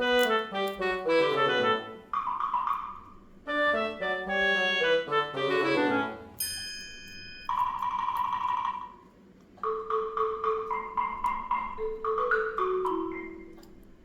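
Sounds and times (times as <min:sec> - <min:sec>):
mallet notes over held tone: 0:09.6 - 0:13.8.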